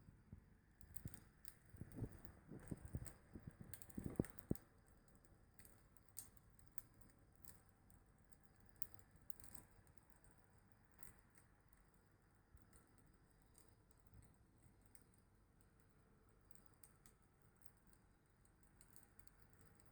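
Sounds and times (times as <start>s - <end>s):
wood fire crackling: 0.8s - 7.6s.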